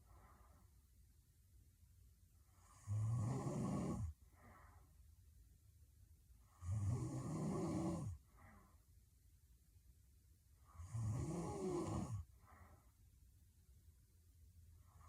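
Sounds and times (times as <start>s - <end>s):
faint breath: 0.0s - 1.0s, 4.1s - 5.2s, 8.2s - 9.0s, 12.2s - 13.2s
woman snoring: 2.6s - 4.2s, 6.6s - 8.2s, 10.8s - 12.3s.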